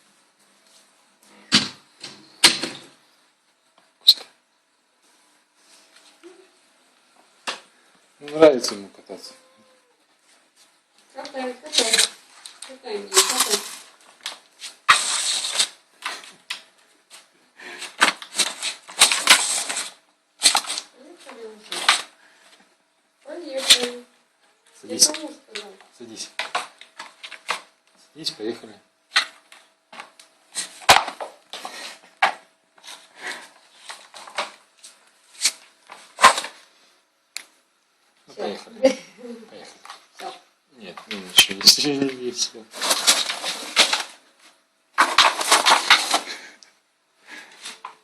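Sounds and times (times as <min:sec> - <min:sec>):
dustpan clattering on hard floor: 0:13.1 - 0:13.9, 0:45.0 - 0:46.6
dustpan scraping across floor: 0:14.6 - 0:16.3, 0:42.7 - 0:46.5.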